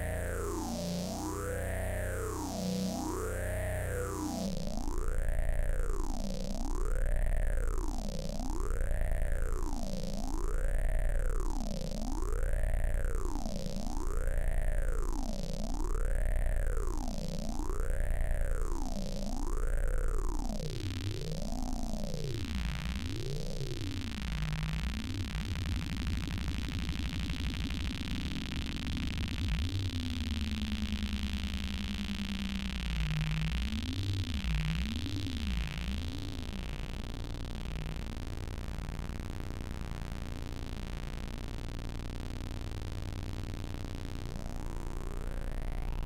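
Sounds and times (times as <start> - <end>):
synth tone sweeping like a siren: 0.0 - 6.4
low bass drone: 0.0 - 13.2.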